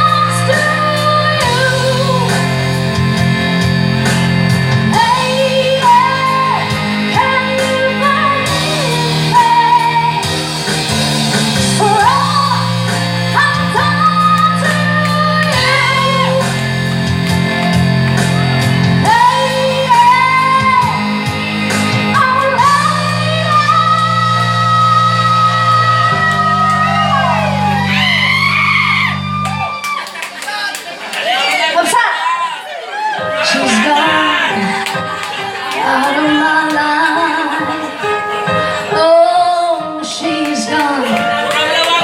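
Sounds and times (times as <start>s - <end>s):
live rock band playing: 0.0s - 30.4s, 33.2s - 42.0s
long wavering high notes: 11.8s - 30.0s.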